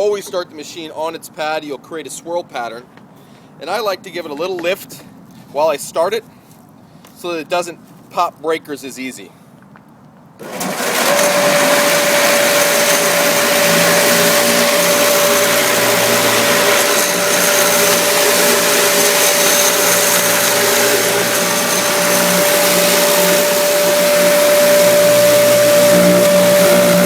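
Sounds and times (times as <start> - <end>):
floor sander whirring: 10.4 - 27.0.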